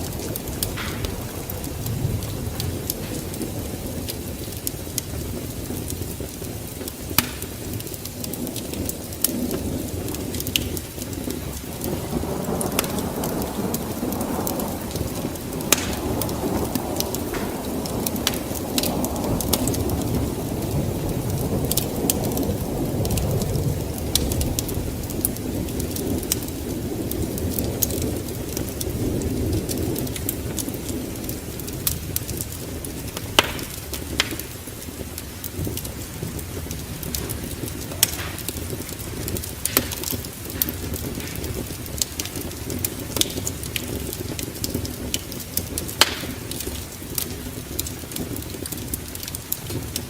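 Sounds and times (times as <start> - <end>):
sharp crackling pops: 0.0 - 23.4, 24.0 - 50.0
rolling thunder rumble: 0.0 - 50.0
steady rain: 0.0 - 50.0.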